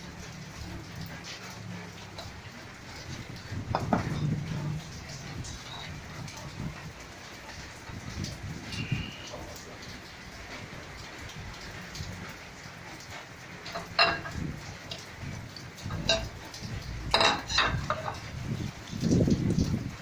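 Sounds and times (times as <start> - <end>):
steady hiss: 0.0 - 18.8
dishes and utensils clinking: 3.7 - 4.4, 13.7 - 15.0, 15.8 - 16.4, 17.1 - 18.3.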